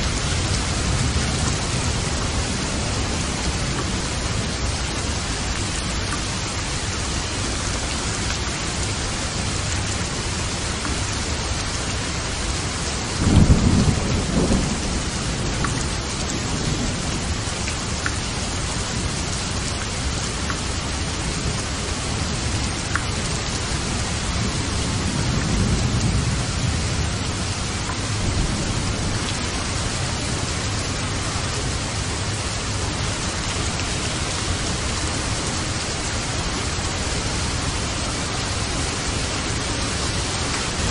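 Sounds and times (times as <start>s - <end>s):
heavy rain: 0.0s - 40.9s
thunder rumbling: 13.1s - 17.6s, 24.2s - 33.8s.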